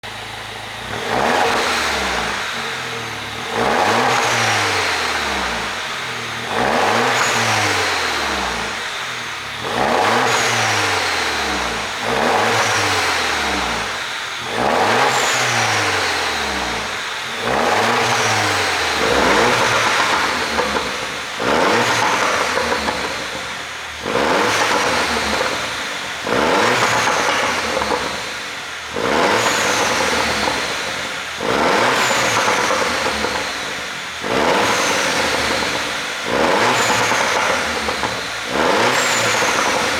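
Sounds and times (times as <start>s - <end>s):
car engine revving: 0.0s - 39.9s
exhaust pops and crackles: 29.0s - 39.9s.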